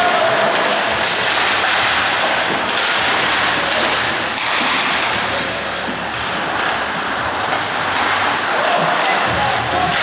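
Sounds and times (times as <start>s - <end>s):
arena noise: 0.0s - 10.0s.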